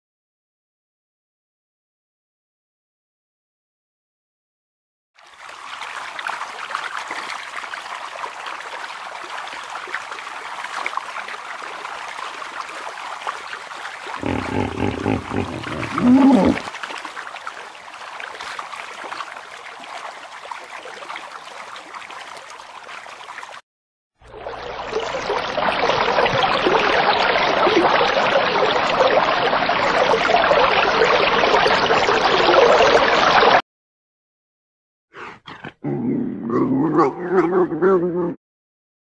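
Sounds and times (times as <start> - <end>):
rush of running water: 5.2 - 23.6, 24.3 - 33.6
animal call: 14.2 - 16.7, 35.2 - 38.4.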